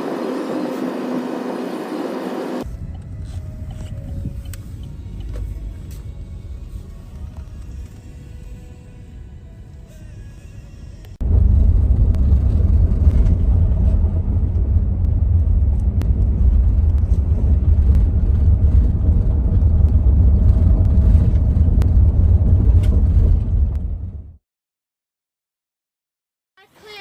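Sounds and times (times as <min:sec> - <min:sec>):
steady low rumble: 0:02.6 - 0:09.9, 0:11.0 - 0:24.4.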